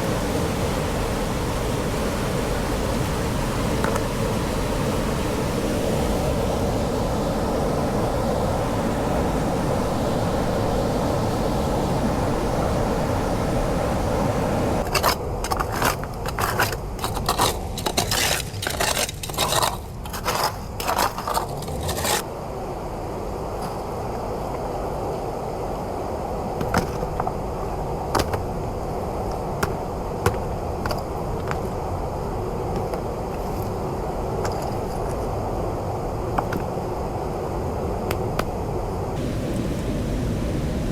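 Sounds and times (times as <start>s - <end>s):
stream flowing: 0.0s - 14.9s, 39.2s - 40.9s
gravel scraping in gold pan: 14.8s - 22.2s.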